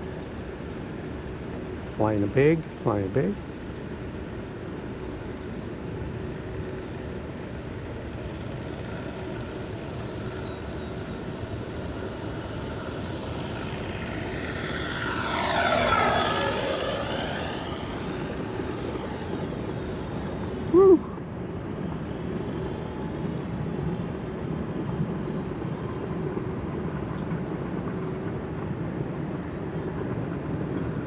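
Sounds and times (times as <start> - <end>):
model plane propeller and motor: 6.0 - 24.4.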